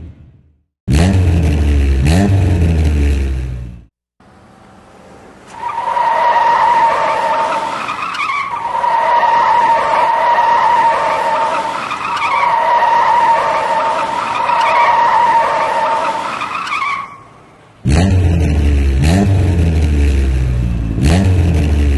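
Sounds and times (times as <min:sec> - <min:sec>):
tyre squeal: 0:05.5 - 0:17.6.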